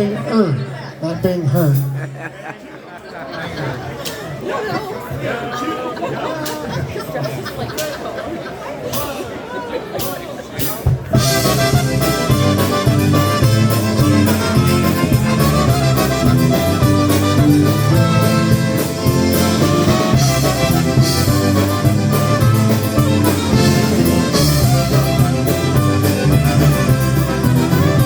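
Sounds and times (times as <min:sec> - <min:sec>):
polka band playing: 0:01.0 - 0:02.2, 0:09.9 - 0:28.0
accordion: 0:10.6 - 0:28.0
drum kit beat: 0:10.6 - 0:28.0.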